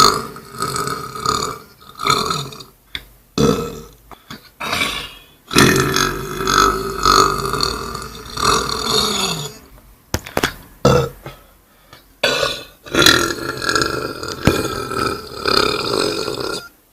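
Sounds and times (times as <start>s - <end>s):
man belching: 0.0s - 2.7s, 3.4s - 4.0s, 4.6s - 9.7s, 10.8s - 11.4s, 12.2s - 16.8s.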